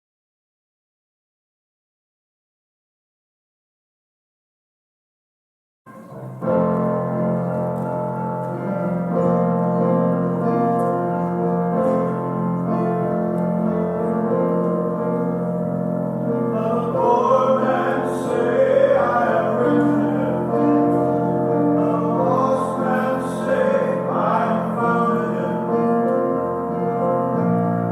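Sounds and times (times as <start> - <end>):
piano playing slowly: 5.9 - 27.9
choir singing: 15.2 - 27.9.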